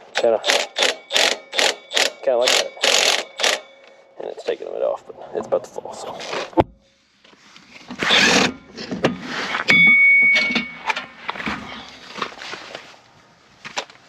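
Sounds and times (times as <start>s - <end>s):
ringing metal clang: 0.2s - 4.1s, 9.7s - 11.2s
metal parts clanking and scraping: 7.7s - 9.8s, 10.4s - 12.5s.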